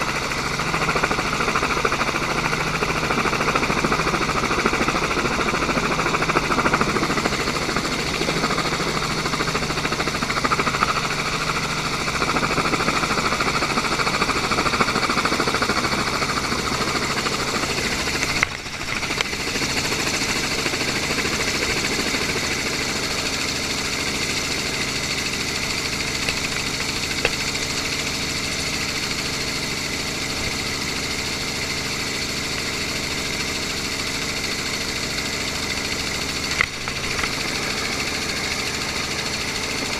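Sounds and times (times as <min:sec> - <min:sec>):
constant whining tones: 0:00.0 - 0:39.9
engine rumbling: 0:15.8 - 0:39.9.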